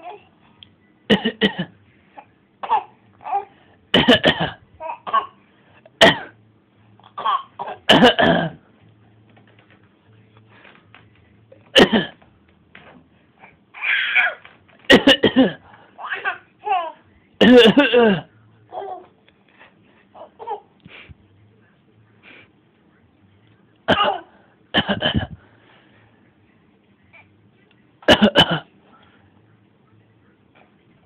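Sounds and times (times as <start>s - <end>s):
baby coughing: 1.1s - 1.7s, 2.6s - 5.4s, 6.0s - 6.4s, 7.0s - 8.6s, 11.8s - 12.2s, 13.8s - 19.0s, 23.9s - 25.4s, 28.1s - 28.7s.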